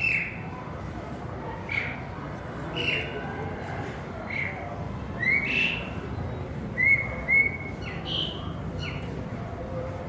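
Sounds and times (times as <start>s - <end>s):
bird singing whistled notes: 0.0s - 0.4s, 5.2s - 9.0s.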